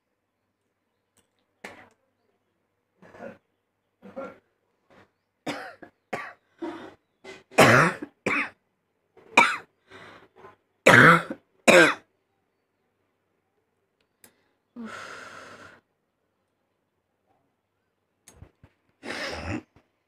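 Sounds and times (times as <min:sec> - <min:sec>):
person coughing: 0:05.5 - 0:06.9, 0:07.6 - 0:08.5, 0:09.4 - 0:09.7, 0:10.9 - 0:12.0.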